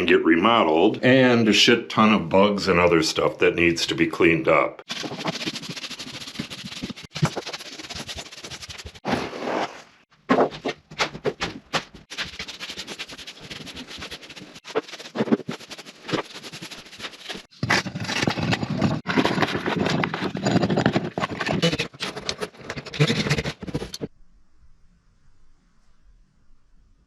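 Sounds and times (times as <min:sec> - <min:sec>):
scraping and rustling insulation: 0:04.9 - 0:24.1.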